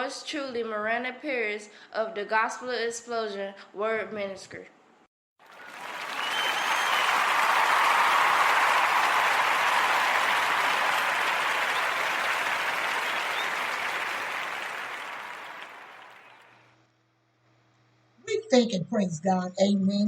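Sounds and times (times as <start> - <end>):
crowd applauding: 5.4 - 16.7.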